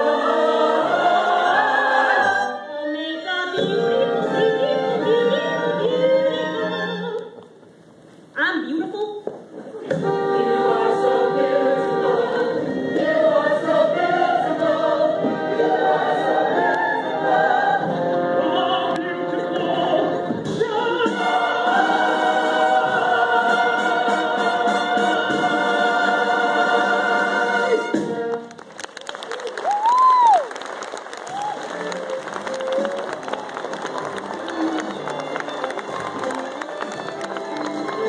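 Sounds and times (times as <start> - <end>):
voices singing operatic style: 0.0 - 7.3, 9.8 - 28.0
audience clapping: 28.2 - 38.0.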